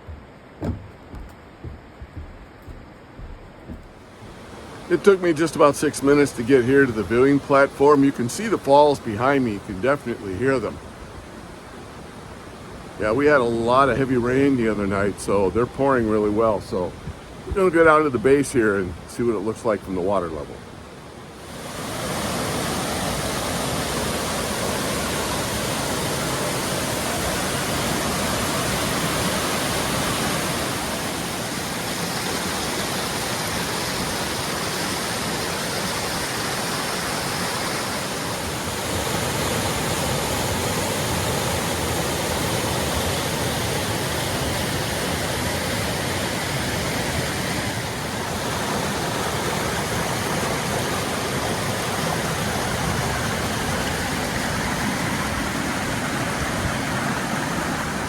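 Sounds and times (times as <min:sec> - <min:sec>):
waterfall rushing: 0:02.6 - 0:10.4, 0:21.4 - 0:58.0.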